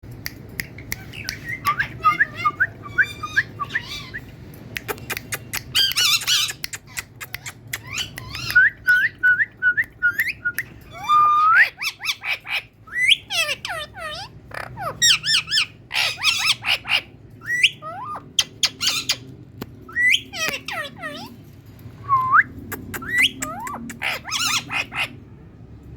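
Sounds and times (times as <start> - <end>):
parrot screeching: 1.0 - 4.3, 5.7 - 9.1, 10.9 - 19.3, 19.9 - 21.4, 23.0 - 25.2
parrot chirping and whistling: 1.0 - 4.4, 5.0 - 12.3, 12.9 - 19.2, 19.9 - 21.3, 22.0 - 25.1.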